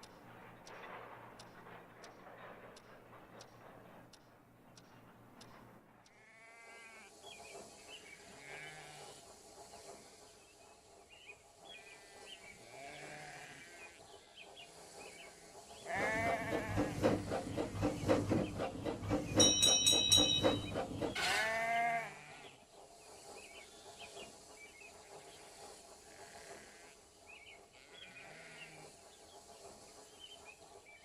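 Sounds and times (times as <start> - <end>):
farm animal bleating: 6.2 - 7.1, 8.4 - 9.0, 12.7 - 13.9, 21.2 - 22.4, 27.8 - 28.8
faint animal and bird calls: 6.2 - 16.8, 21.2 - 31.0.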